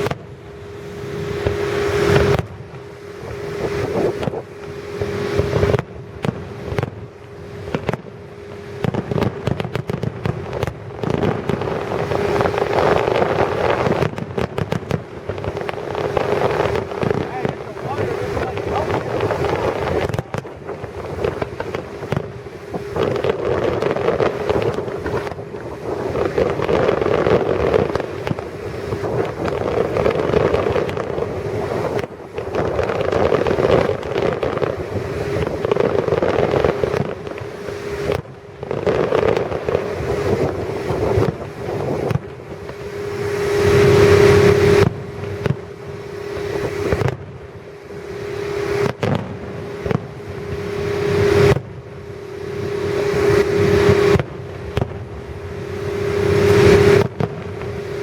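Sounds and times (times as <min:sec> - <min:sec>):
fireworks bangs and crackles: 0:00.0 - 0:58.0
steady mid-pitched tone: 0:15.6 - 0:25.6.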